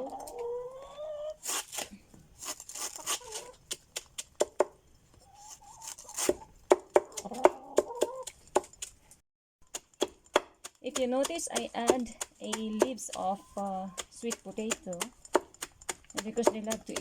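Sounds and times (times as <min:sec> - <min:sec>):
blade chopping banana stalk: 0:09.6 - 0:13.3, 0:14.0 - 0:17.0.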